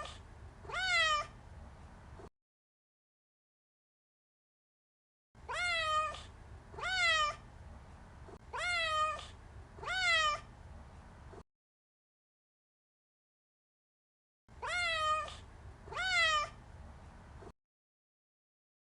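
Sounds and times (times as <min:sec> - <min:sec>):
cat meowing: 0:00.0 - 0:01.4, 0:05.4 - 0:07.4, 0:08.5 - 0:10.5, 0:14.6 - 0:16.6.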